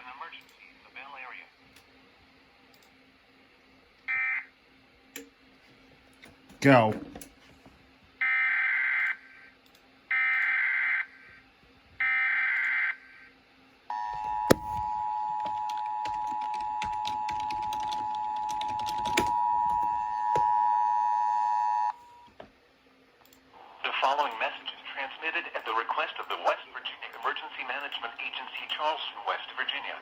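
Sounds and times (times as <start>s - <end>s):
two-tone attention signal: 13.9s - 22.3s.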